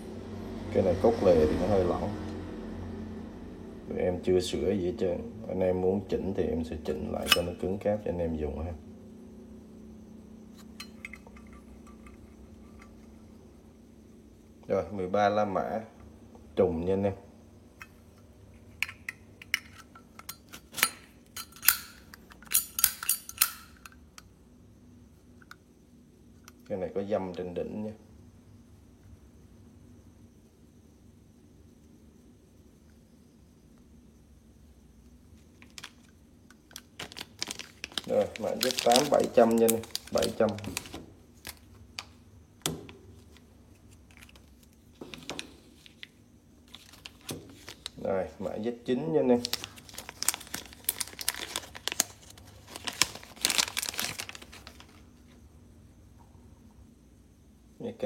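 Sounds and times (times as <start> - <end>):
metal lighters clicking and knocking: 18.8 - 24.3.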